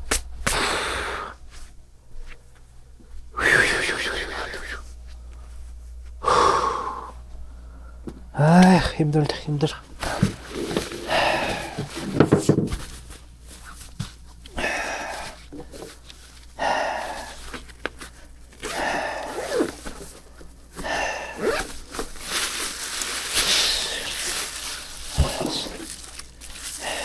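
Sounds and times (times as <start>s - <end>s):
man breathing heavily: 0.5s - 1.7s, 3.4s - 5.0s, 6.2s - 8.9s, 9.8s - 12.3s, 14.5s - 17.7s, 18.6s - 19.9s, 20.7s - 22.2s, 23.2s - 27.0s.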